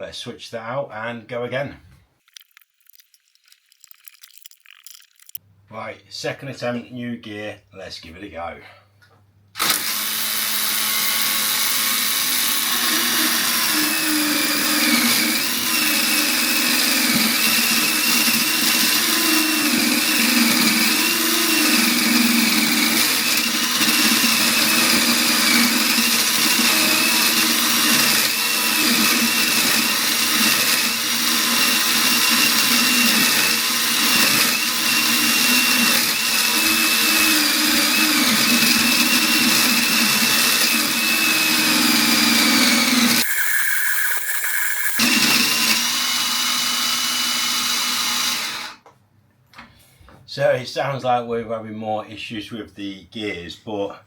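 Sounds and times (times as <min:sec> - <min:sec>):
toy table saw motor whining: 0:09.6 - 0:48.8.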